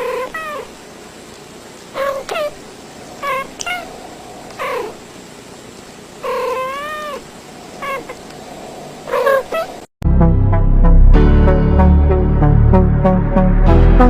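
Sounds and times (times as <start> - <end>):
cat meowing: 0.0 - 0.7, 2.0 - 5.0, 6.2 - 7.2, 7.8 - 8.3, 9.1 - 9.9.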